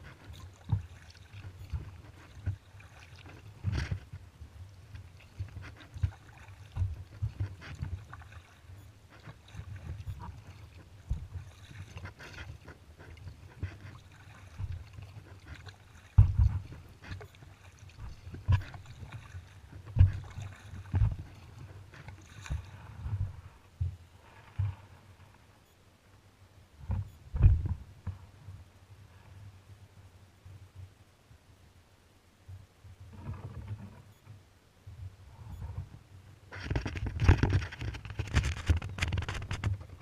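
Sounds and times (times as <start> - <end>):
paddle splashing: 0.0 - 23.6
paddle knocking on kayak hull: 14.5 - 16.8.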